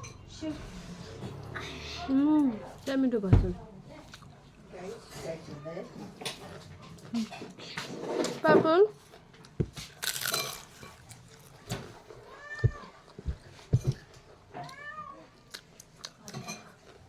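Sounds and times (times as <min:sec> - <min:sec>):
cat meowing: 0:12.2 - 0:13.0, 0:14.6 - 0:15.4.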